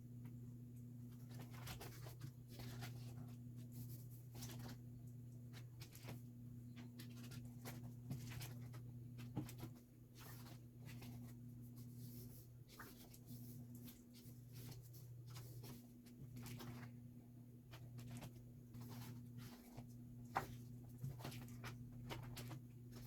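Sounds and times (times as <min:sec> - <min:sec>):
steady low hum: 0:00.0 - 0:23.0
paper and card rustling: 0:01.1 - 0:04.8, 0:05.5 - 0:06.2, 0:17.7 - 0:23.0.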